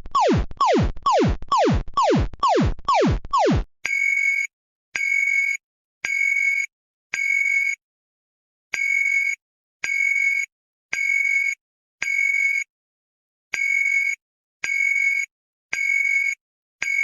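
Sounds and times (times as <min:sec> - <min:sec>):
high electronic beeps: 0:00.0 - 0:03.7.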